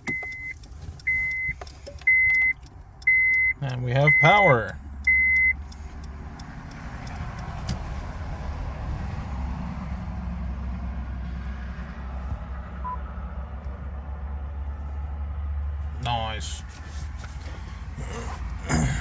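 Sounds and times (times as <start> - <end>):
motor vehicle rumble: 0.0 - 19.0
faint short beep: 0.1 - 4.5, 12.8 - 13.0.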